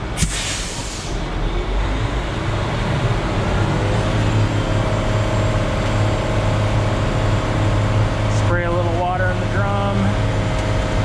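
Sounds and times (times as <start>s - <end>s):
diesel engine running: 0.0s - 11.0s
short hiss: 0.2s - 1.2s.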